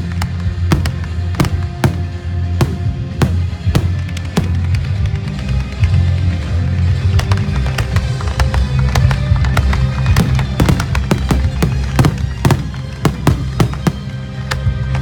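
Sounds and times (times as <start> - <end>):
loud music with heavy bass: 0.0 - 5.4
fireworks bursting: 0.0 - 5.7, 7.1 - 15.0.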